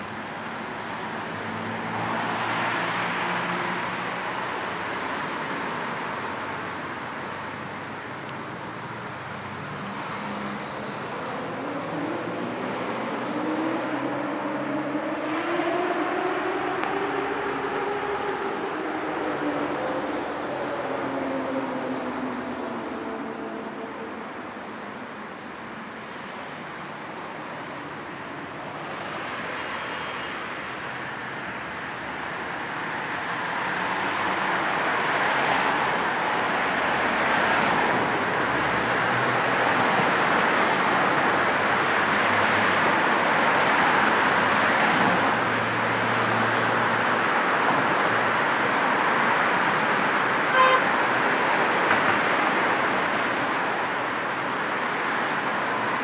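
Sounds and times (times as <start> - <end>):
road traffic: 0.0 - 56.0
car horn toot: 50.5 - 50.9.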